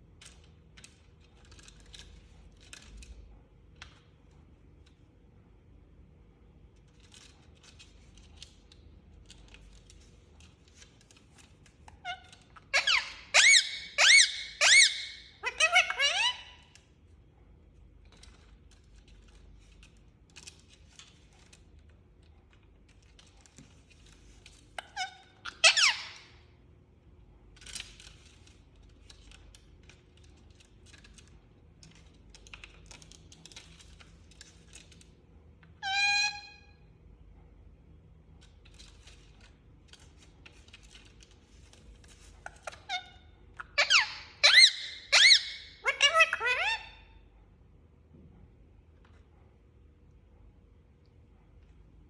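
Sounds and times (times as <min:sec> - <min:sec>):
parakeet screeching: 0:12.0 - 0:16.7, 0:24.8 - 0:26.3, 0:35.8 - 0:36.7, 0:42.5 - 0:47.0.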